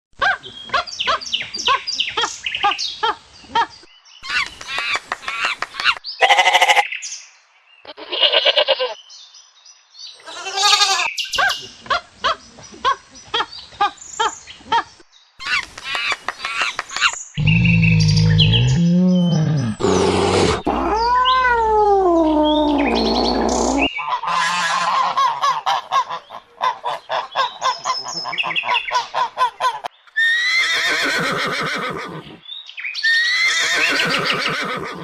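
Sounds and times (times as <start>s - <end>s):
farm animal calls: 6.2s - 6.8s, 10.2s - 11.5s.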